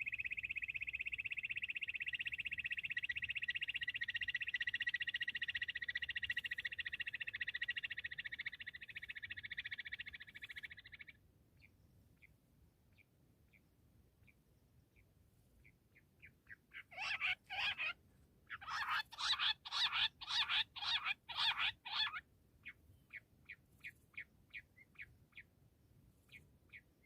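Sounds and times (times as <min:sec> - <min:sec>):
quail trilling: 0:00.0 - 0:11.2, 0:16.2 - 0:25.5.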